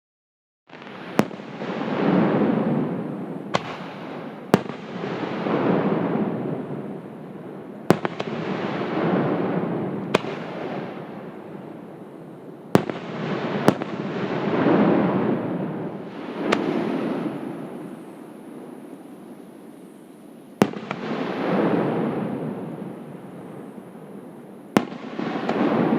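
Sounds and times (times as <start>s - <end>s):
fireworks sharp cracks: 0.7s - 19.0s, 20.6s - 25.9s
fireworks rumbling booms: 0.7s - 19.3s, 20.6s - 25.9s.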